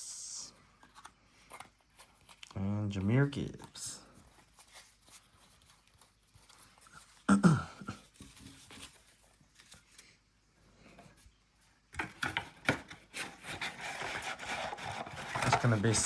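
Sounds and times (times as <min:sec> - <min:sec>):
card packs rustling and clicking: 0:00.8 - 0:07.3, 0:12.0 - 0:16.0.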